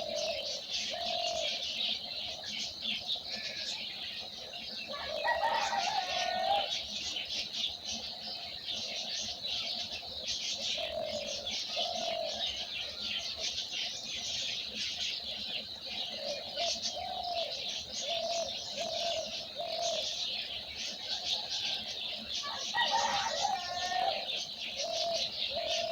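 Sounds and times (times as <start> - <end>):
dove cooing: 0.0 - 1.8, 4.9 - 6.8, 10.6 - 13.2, 16.0 - 20.3, 22.4 - 25.9
small birds chirping: 0.0 - 25.9.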